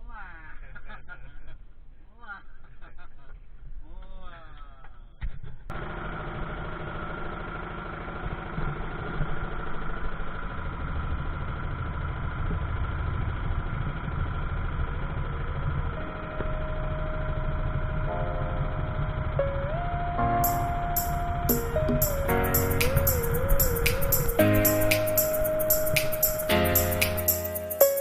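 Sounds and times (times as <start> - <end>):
boat engine throbbing: 16.0 - 27.4.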